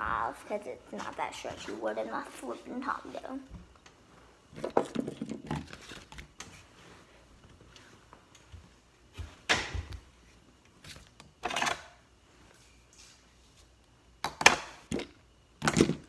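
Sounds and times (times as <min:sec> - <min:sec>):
plastic items knocking and rustling: 0:04.5 - 0:06.6, 0:14.2 - 0:16.0.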